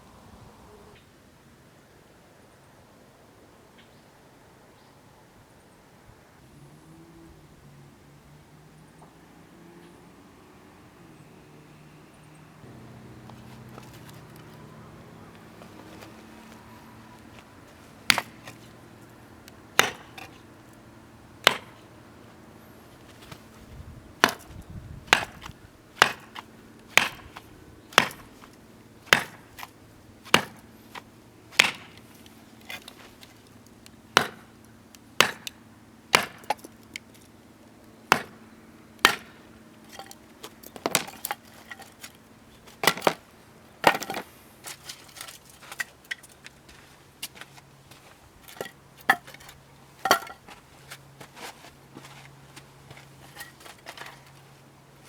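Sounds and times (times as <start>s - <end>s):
firewood splitting knocks: 15.3s - 20.8s, 21.4s - 21.8s, 23.0s - 34.6s, 35.2s - 37.0s, 38.1s - 38.4s, 39.0s - 46.4s, 48.4s - 50.6s.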